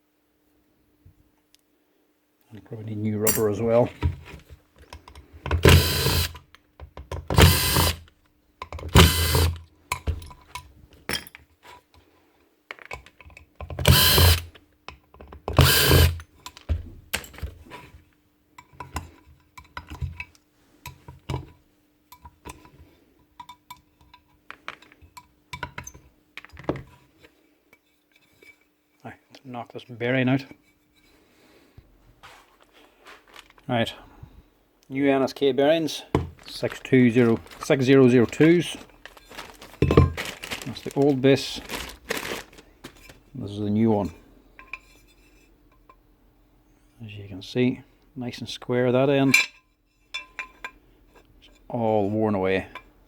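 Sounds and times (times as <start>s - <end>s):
handheld power tool running: 5.6s - 6.4s, 7.3s - 8.0s, 8.9s - 9.6s, 13.8s - 14.5s, 15.6s - 16.2s.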